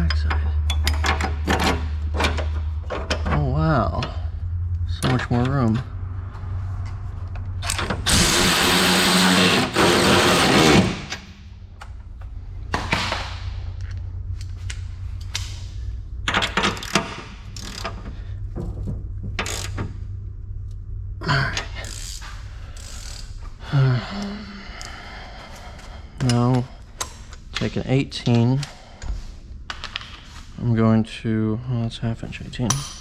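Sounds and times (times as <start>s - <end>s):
metal clicks and knocks: 0.0s - 4.2s.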